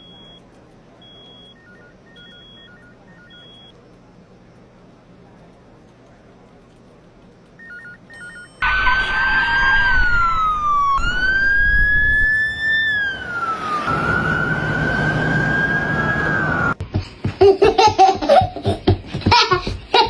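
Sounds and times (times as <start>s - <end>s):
siren-like wail: 8.6s - 16.8s.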